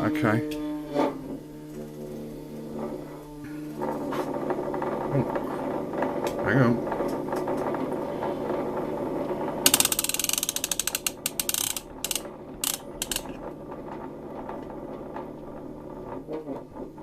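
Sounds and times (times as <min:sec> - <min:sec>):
machine hum: 0:00.0 - 0:17.0
mechanical ratcheting clicks: 0:09.7 - 0:13.4.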